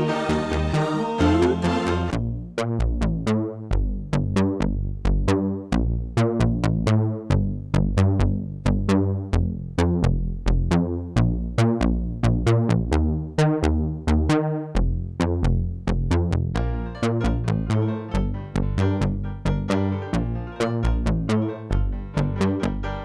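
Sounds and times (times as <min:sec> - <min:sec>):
upbeat instrumental pop music: 0:00.0 - 0:02.2.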